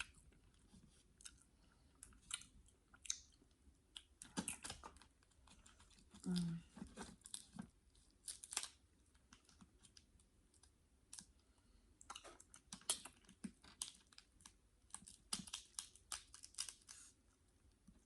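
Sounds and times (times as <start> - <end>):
person chewing food: 0.0 - 7.5.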